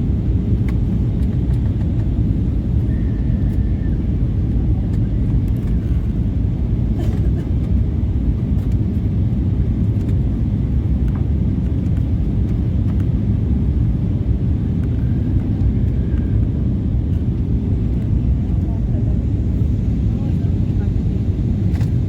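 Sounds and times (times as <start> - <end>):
airplane cabin engine and airflow noise: 0.0 - 22.0.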